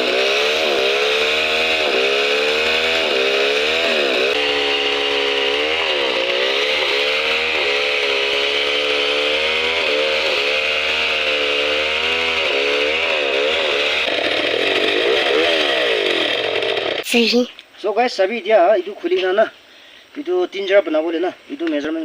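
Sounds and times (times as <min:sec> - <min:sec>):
chainsaw running at high speed: 0:00.0 - 0:17.0.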